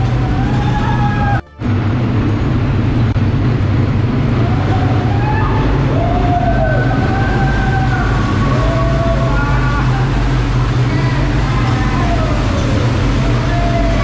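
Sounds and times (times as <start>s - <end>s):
quad bike engine running: 0.0s - 14.0s.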